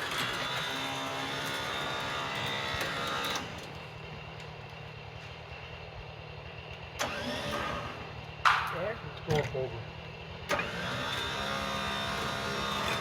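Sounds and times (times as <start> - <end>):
chainsaw revving and idling: 6.9 - 8.4, 9.2 - 13.0.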